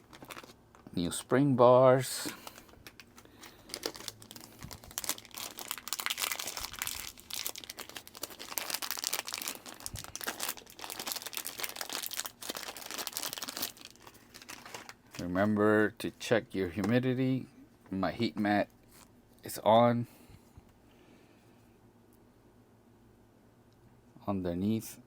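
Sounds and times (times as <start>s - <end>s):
crinkly rustling: 0.0s - 1.3s, 2.0s - 16.2s.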